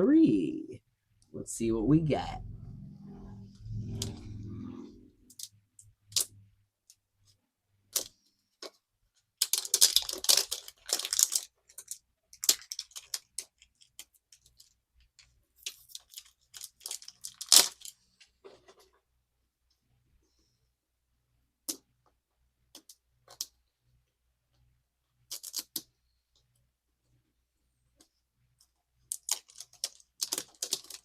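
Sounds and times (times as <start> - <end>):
plastic parts clicking: 7.9 - 8.8, 9.4 - 18.0, 22.7 - 23.6, 25.3 - 25.9, 29.1 - 31.0
plastic packaging tearing and crinkling: 9.4 - 14.8, 15.6 - 18.0, 29.1 - 31.0.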